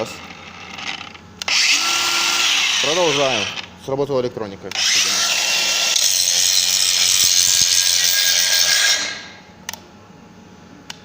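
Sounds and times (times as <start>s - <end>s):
angle grinder grinding steel: 0.6s - 3.6s, 4.8s - 9.4s.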